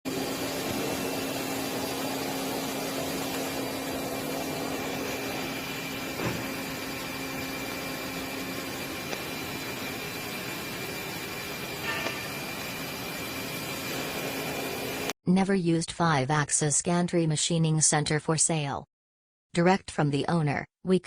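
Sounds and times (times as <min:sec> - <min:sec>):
machinery hum and hiss: 0:00.1 - 0:15.1.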